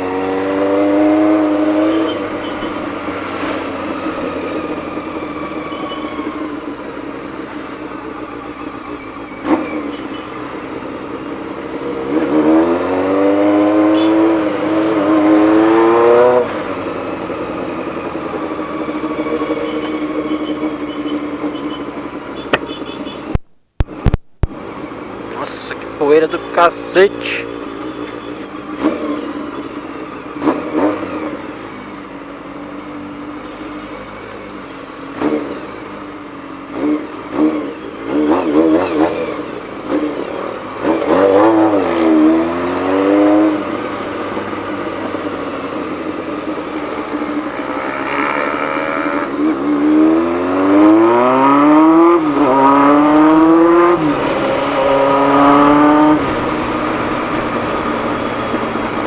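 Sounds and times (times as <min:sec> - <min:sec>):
motorcycle engine revving and accelerating: 0:00.0 - 0:22.8, 0:23.8 - 0:59.0.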